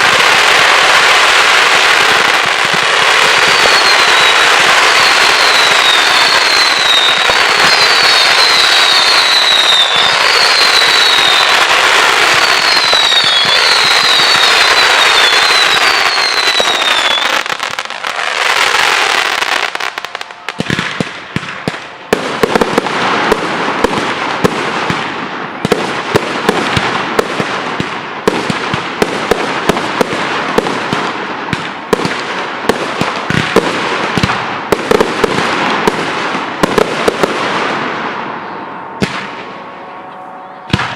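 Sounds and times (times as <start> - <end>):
fireworks whistles falling in pitch: 0.0 - 24.0, 36.6 - 40.9
fireworks crackling: 0.0 - 39.8, 40.7 - 40.9.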